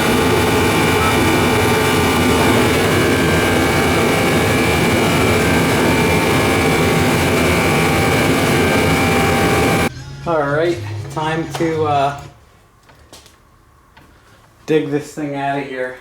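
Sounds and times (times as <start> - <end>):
loud machine rushing noise: 0.0 - 10.4.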